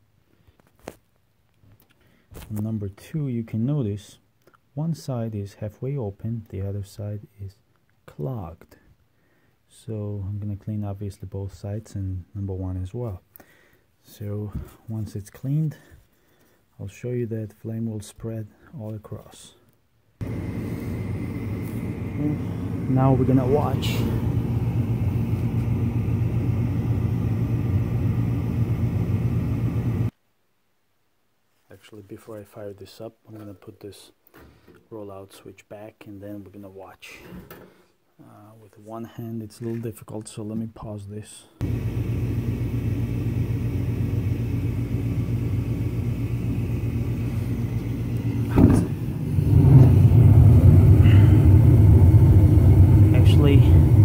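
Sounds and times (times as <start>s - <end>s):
faint rumbling noise: 20.2s - 30.1s, 41.6s - 54.0s
gas burners igniting whoosh: 20.2s - 30.1s, 41.6s - 54.0s
steady low hum: 20.2s - 30.1s, 41.6s - 54.0s.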